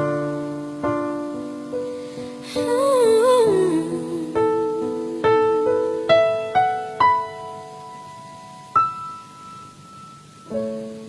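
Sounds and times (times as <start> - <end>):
slow piano music: 0.0 - 11.0.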